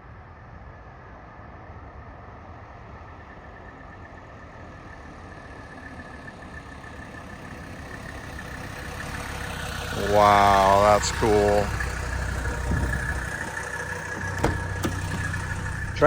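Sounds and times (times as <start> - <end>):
diesel engine rumble: 4.9 - 16.0.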